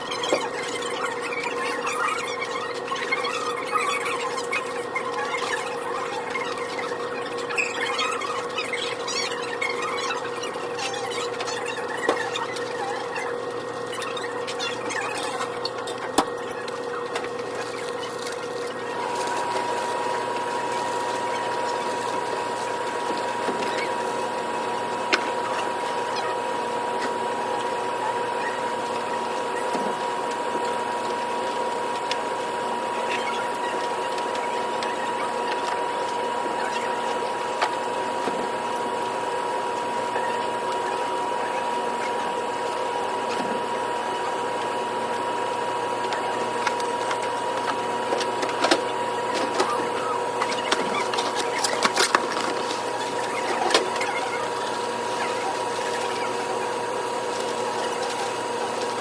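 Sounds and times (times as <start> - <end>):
small machine running: 0.0 - 59.0.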